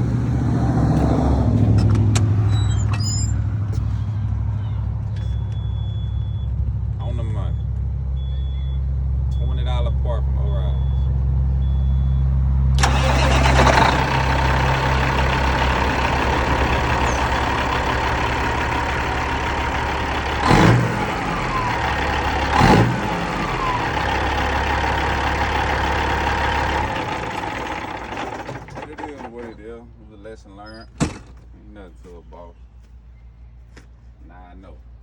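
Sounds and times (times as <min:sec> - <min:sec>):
diesel engine running: 0:00.0 - 0:30.9
short loud engine bursts: 0:12.8 - 0:29.6.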